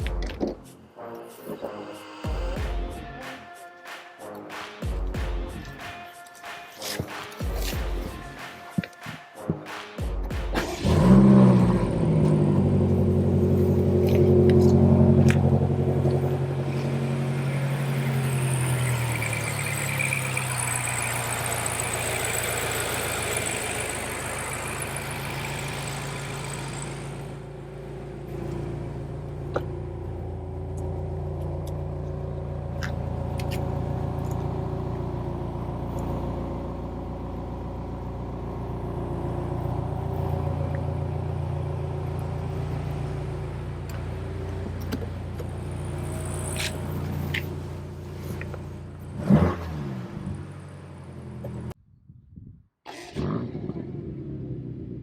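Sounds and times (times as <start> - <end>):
engine revving: 9.4 - 51.8, 52.9 - 55.0
car engine running: 10.2 - 51.8
hiss: 16.7 - 27.4.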